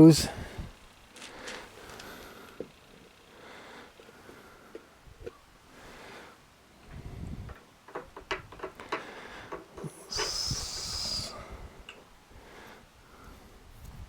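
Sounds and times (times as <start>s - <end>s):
hiss with thin high tone: 9.8s - 12.0s.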